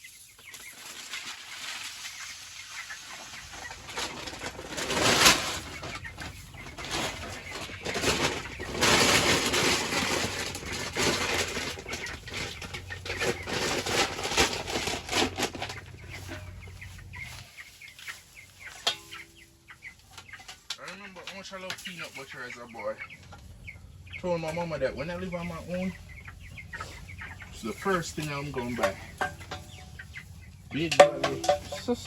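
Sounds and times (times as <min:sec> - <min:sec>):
chickens clucking: 0:00.0 - 0:32.0
wings flapping: 0:00.6 - 0:18.2.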